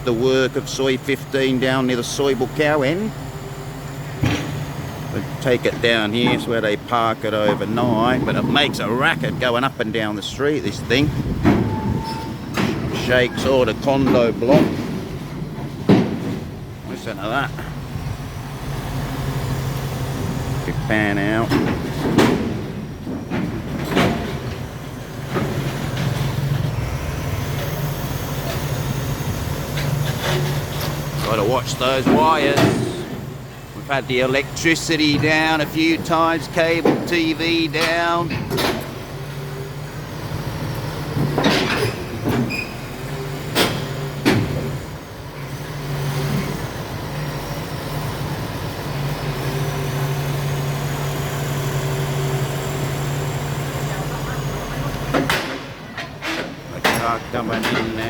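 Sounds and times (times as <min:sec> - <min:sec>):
engine low rumble: 0:00.0 - 0:58.0
machine knocks and clanks: 0:04.1 - 0:04.8, 0:05.4 - 0:09.5, 0:10.6 - 0:11.8, 0:12.5 - 0:16.8, 0:21.4 - 0:26.7, 0:34.8 - 0:39.1, 0:40.6 - 0:42.6, 0:43.4 - 0:44.9, 0:55.1 - 0:58.0.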